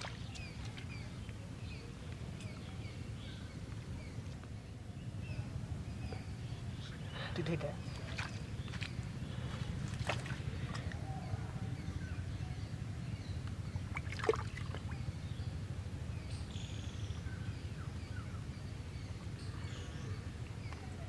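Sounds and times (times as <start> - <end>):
steady low rumble: 0.1 - 21.0.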